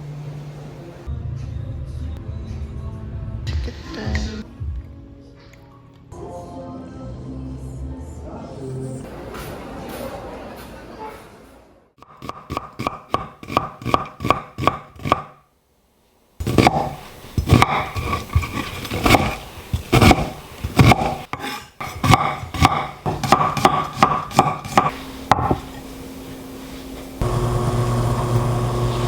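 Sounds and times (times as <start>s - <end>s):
knife chopping on wooden board: 12.2s - 15.3s, 16.4s - 25.6s.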